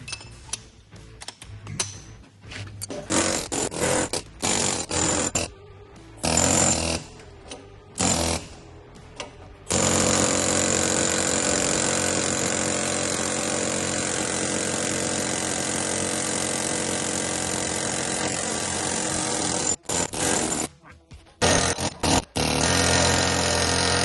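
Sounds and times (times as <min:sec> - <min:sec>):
pneumatic air hammer: 0:02.8 - 0:05.5, 0:06.2 - 0:08.6, 0:09.2 - 0:20.7, 0:21.4 - 0:24.0.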